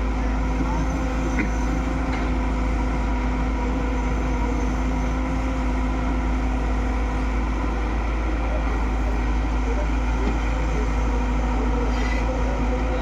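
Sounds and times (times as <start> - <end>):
excavator diesel engine running: 0.0 - 13.0.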